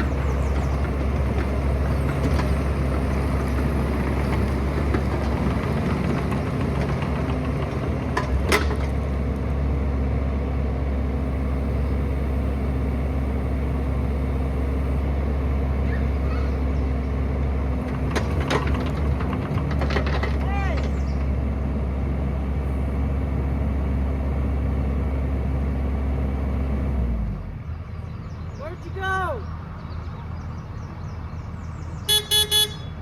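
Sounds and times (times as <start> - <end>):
excavator diesel engine running: 0.0 - 33.0.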